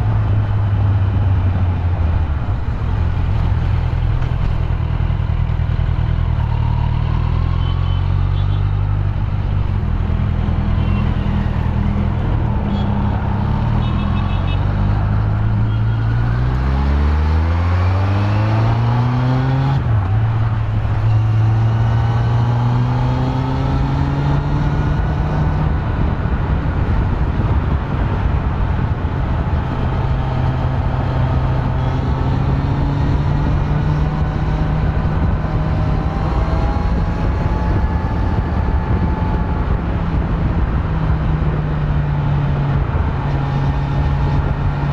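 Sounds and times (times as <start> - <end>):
motorcycle engine revving: 9.7 - 26.2, 29.2 - 44.9
constant rushing noise: 23.4 - 44.9.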